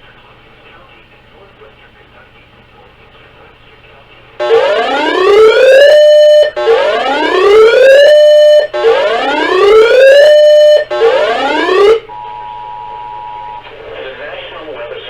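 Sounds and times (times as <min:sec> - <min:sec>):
electronic whooping siren: 0:04.4 - 0:12.1.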